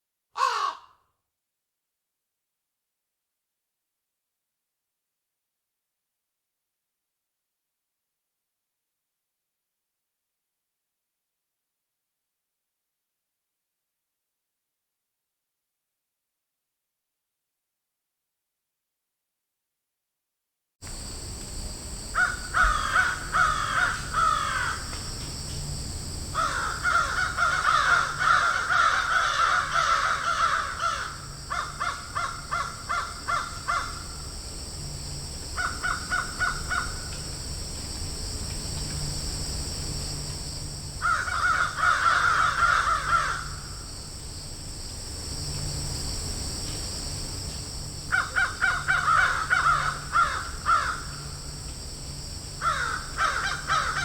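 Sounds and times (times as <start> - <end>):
crows cawing: 0.4 - 1.1, 22.2 - 25.1, 26.3 - 34.3, 35.6 - 37.2, 41.0 - 43.8, 48.1 - 51.4, 52.6 - 54.0.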